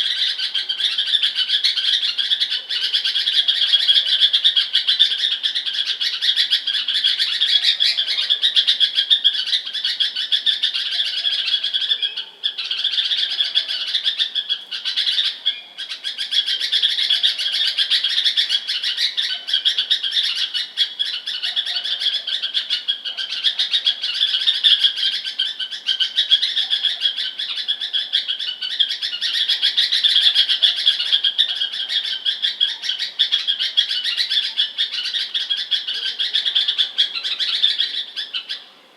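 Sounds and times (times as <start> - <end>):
bird chirping: 0.0 - 38.8.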